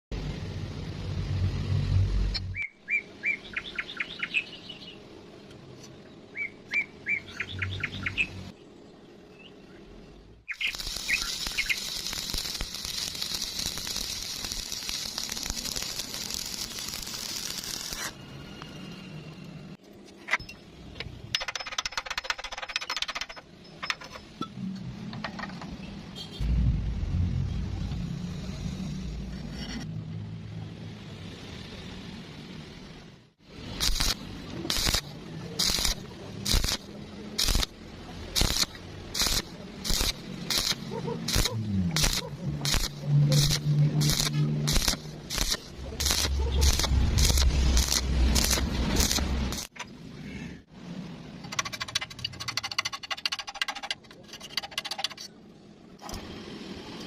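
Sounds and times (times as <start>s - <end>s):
bird chirping: 2.4s - 5.1s, 6.3s - 11.9s
steady hiss: 10.5s - 19.1s, 33.5s - 49.8s.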